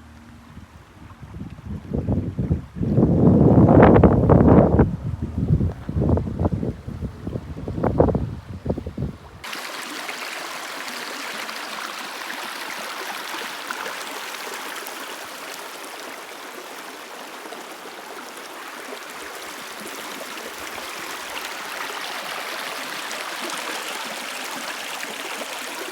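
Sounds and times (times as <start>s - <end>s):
wind buffeting microphone: 0.4s - 9.5s
stream water rushing: 9.2s - 25.9s.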